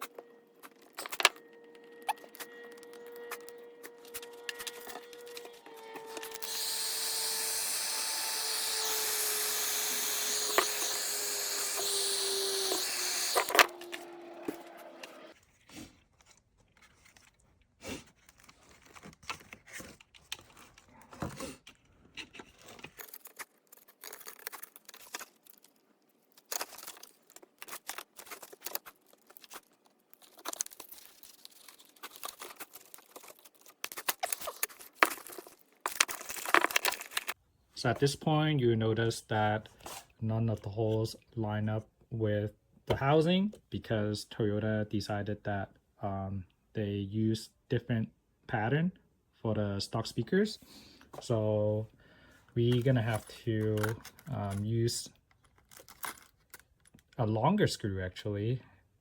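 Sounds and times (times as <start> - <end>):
tools being handled: 0.0 - 6.7, 18.3 - 37.4, 52.7 - 57.1
small power tool running: 1.4 - 15.3.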